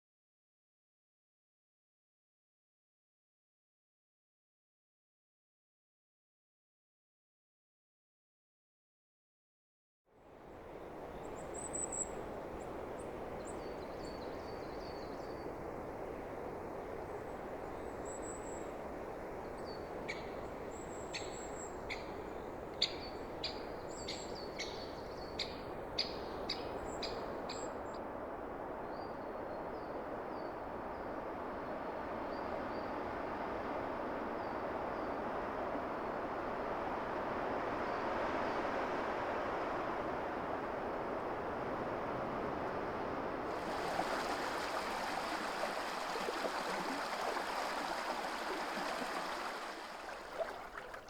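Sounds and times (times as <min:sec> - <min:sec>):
wind through forest trees: 0:10.1 - 0:51.0
distant birds calling: 0:10.7 - 0:27.9, 0:43.5 - 0:51.0.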